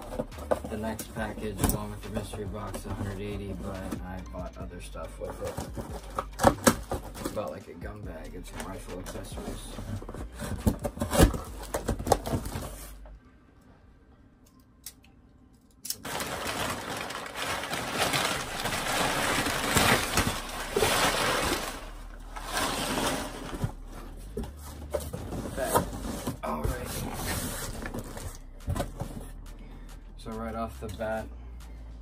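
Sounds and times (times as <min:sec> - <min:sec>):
packaging rustling and crinkling: 0:05.3 - 0:07.5, 0:16.0 - 0:29.3.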